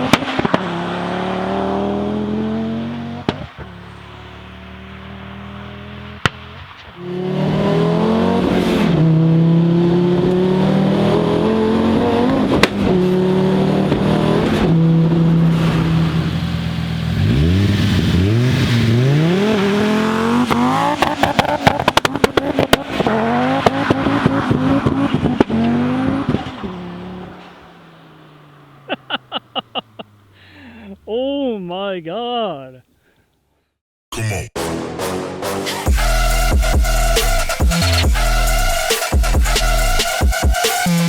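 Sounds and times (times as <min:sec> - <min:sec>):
exhaust crackling pops: 0:00.0 - 0:00.8, 0:03.2 - 0:03.8, 0:06.2 - 0:07.0, 0:12.4 - 0:13.0, 0:20.4 - 0:26.7
car engine revving hard: 0:00.0 - 0:30.4.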